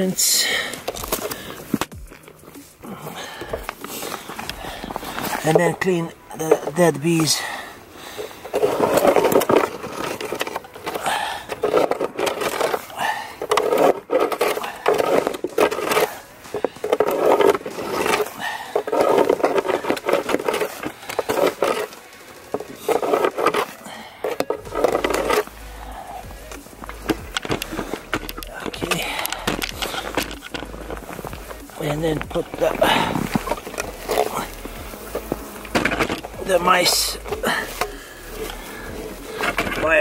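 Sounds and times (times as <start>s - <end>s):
scraping on wooden board: 8.3s - 36.5s.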